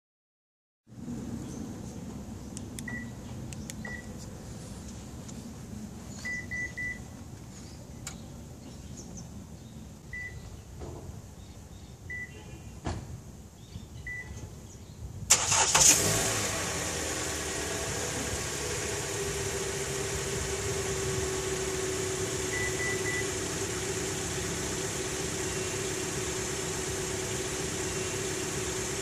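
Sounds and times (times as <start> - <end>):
short electronic beeps: 3.8 - 4.1, 6.2 - 7.0.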